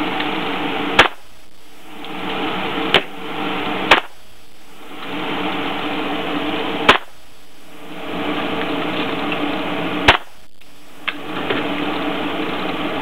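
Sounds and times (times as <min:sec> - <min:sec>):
steady hiss: 0:00.0 - 0:13.0
gunshots: 0:01.0 - 0:01.3, 0:03.9 - 0:04.2, 0:06.8 - 0:07.2, 0:10.0 - 0:10.4.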